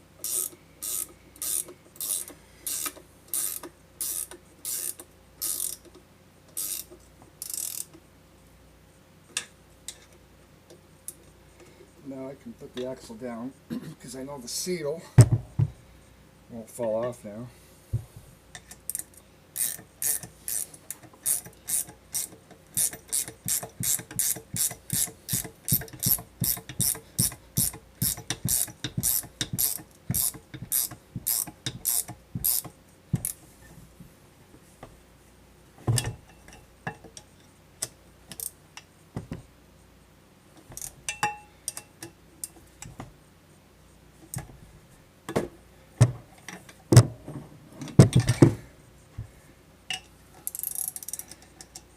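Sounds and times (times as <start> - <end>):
ratchet wrench clicking: 0.2 - 6.0, 6.6 - 8.0, 18.9 - 33.4, 50.4 - 51.8.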